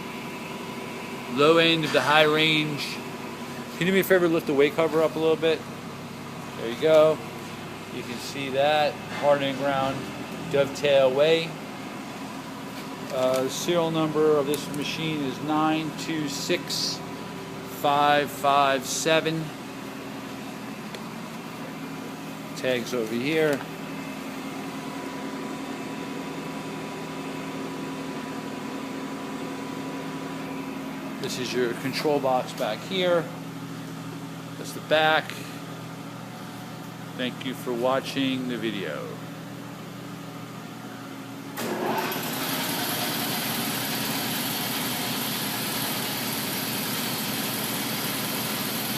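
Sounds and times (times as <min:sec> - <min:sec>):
steady machine hum: 0:00.0 - 0:48.9
motor starting and running: 0:41.5 - 0:48.9.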